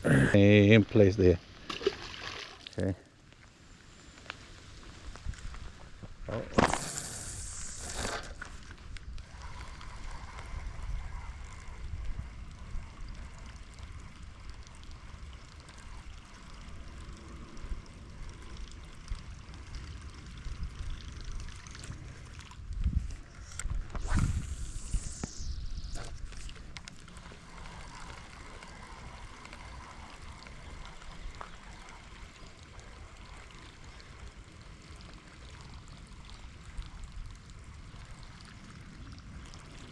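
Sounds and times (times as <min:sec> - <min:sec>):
lure plopping and gurgling: 0:01.7 - 0:02.8
wind rumble on microphone: 0:04.9 - 0:39.9.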